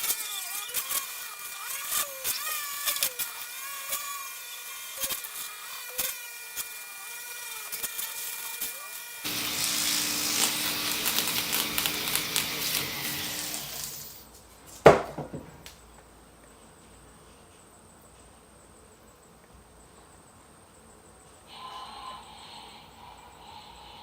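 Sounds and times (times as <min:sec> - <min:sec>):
buzzing scratchy tool: 0:00.0 - 0:14.2
steady hum: 0:09.3 - 0:14.0.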